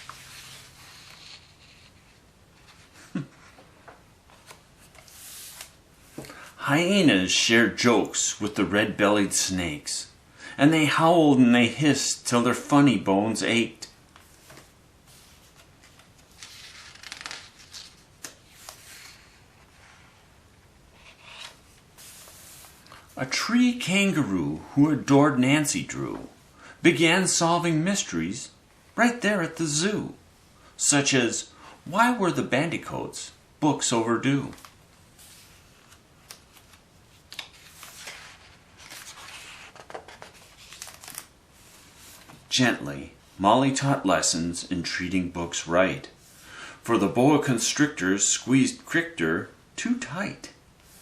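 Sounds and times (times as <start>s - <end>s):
paper page rustling: 0.0s - 3.7s, 4.3s - 5.8s, 14.2s - 20.2s, 34.4s - 42.4s.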